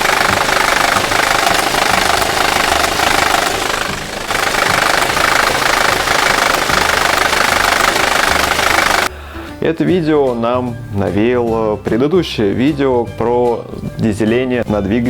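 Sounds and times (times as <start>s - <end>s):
engine with metallic clatter: 0.0s - 9.1s.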